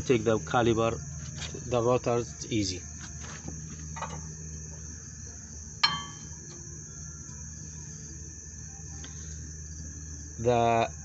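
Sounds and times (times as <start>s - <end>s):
crickets chirping: 0.0s - 11.0s
metallic clink: 5.8s - 6.6s.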